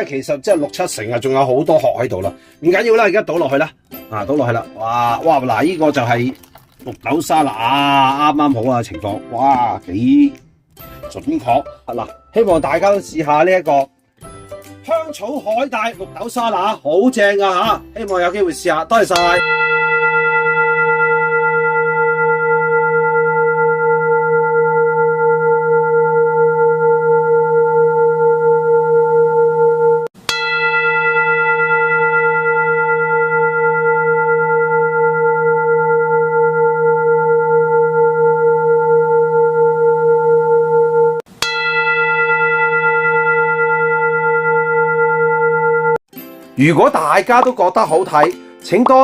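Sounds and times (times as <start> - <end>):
struck metal bell ringing: 18.2 - 46.0.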